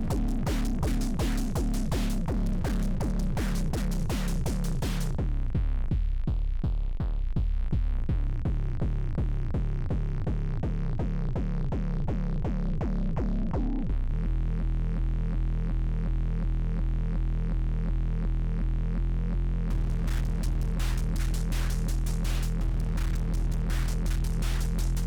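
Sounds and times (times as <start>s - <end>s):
fast drum machine beat: 0.0s - 5.2s, 19.7s - 25.0s
droning pulsing synth bass: 0.0s - 25.0s
bright hi-hat hits: 19.7s - 25.0s.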